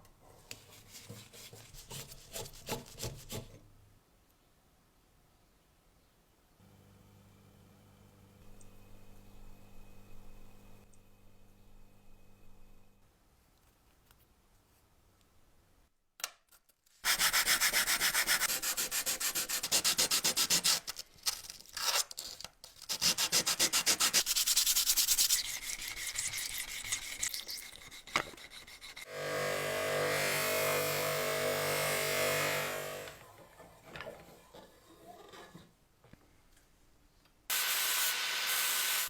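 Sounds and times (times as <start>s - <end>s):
hand scrubbing metal parts: 23.4s - 29.1s
small electric tool running: 29.0s - 33.2s.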